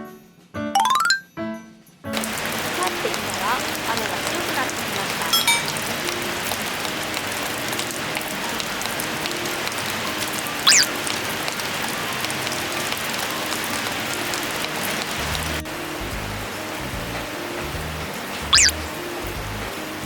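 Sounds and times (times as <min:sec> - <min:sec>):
soft music: 0:00.0 - 0:20.0
heavy rain falling: 0:02.2 - 0:20.0
short high squeak: 0:10.7 - 0:10.9, 0:18.5 - 0:18.8.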